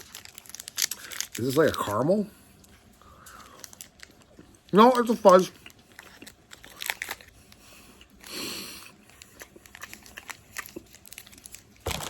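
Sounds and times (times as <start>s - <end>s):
person chewing: 5.5s - 12.0s
breathy nasal hum: 7.5s - 9.6s.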